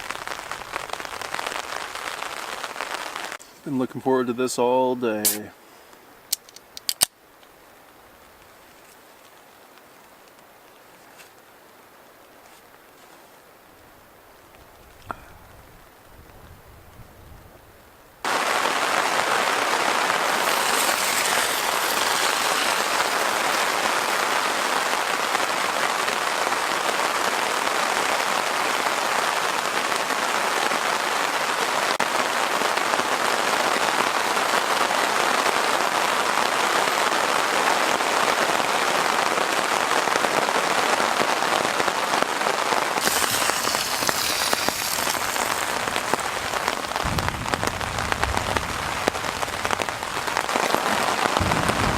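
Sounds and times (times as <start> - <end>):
heavy rain pouring: 0.0 - 3.4, 18.1 - 51.9.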